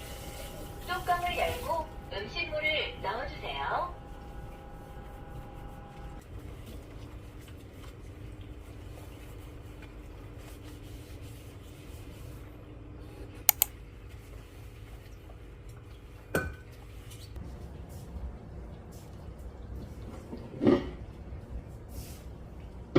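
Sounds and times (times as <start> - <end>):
faint steady hum: 0.0 - 6.2
sharp clicks: 13.5 - 13.7.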